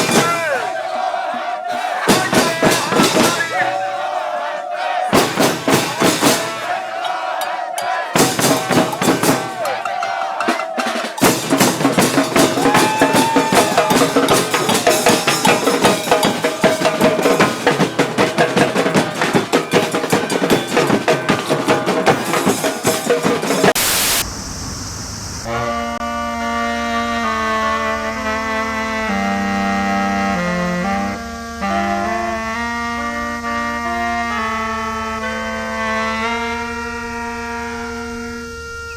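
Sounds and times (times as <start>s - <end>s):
brass band holding chords: 0.0s - 23.8s, 25.5s - 38.3s
street band drums and horns: 0.0s - 24.2s
burst of noise: 23.7s - 25.6s.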